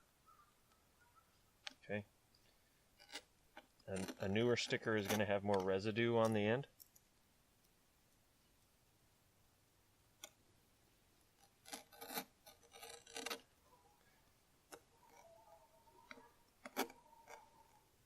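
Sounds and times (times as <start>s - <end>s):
razor blade scraping glass: 3.0s - 5.7s, 11.4s - 13.5s, 14.7s - 17.9s.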